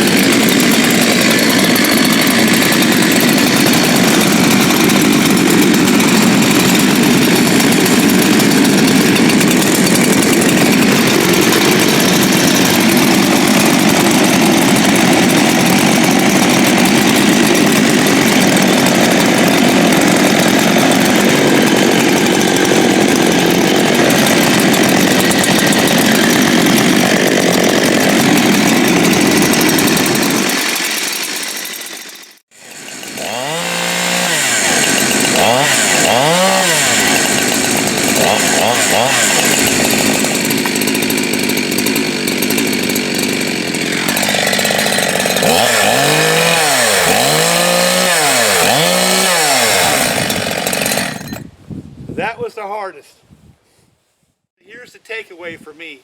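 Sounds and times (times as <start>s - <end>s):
chainsaw running: 0.0s - 51.5s.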